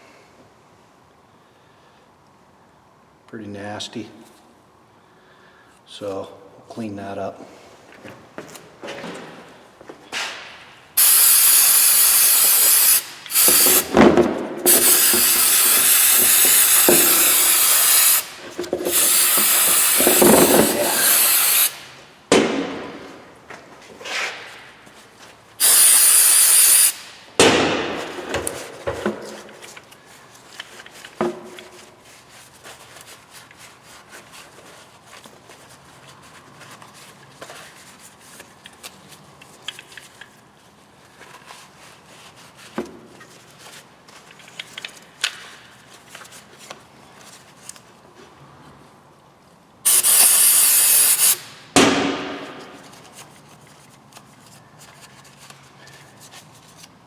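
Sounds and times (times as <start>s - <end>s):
aerosol spray hissing: 11.0s - 14.0s, 14.7s - 21.8s, 25.6s - 27.1s, 49.9s - 51.5s
clicks and knocks of handled part: 44.2s - 45.6s.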